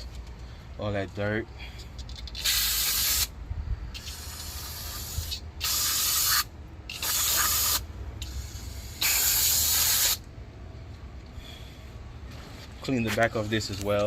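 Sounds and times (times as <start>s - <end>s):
aerosol can spraying: 2.3s - 3.3s, 4.0s - 10.2s.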